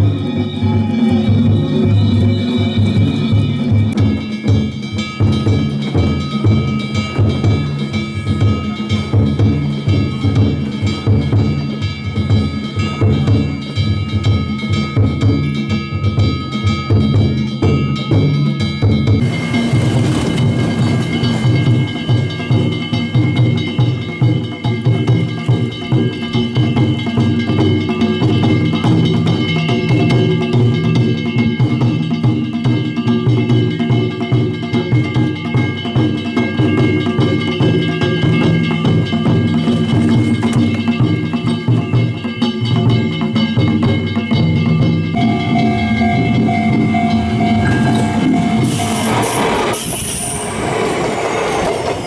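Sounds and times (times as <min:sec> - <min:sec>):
taiko drum beating: 0:00.0 - 0:49.2
metal gongs clanging: 0:00.0 - 0:52.0
metallic ringing: 0:18.8 - 0:52.0.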